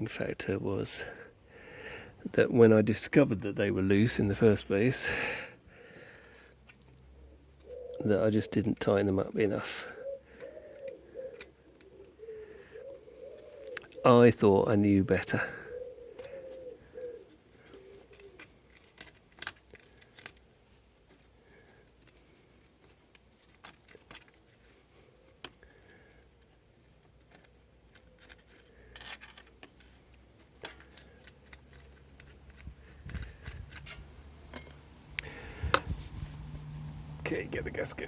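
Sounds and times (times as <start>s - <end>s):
metal tools clicking and clinking: 27.3s - 34.8s.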